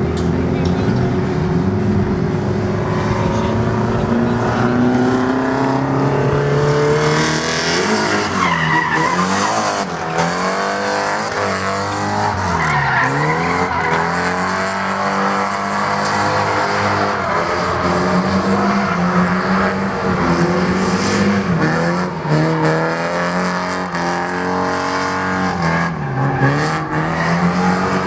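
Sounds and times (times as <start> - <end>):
car engine revving: 0.0 - 28.0
tyres squealing and skidding: 7.2 - 28.0.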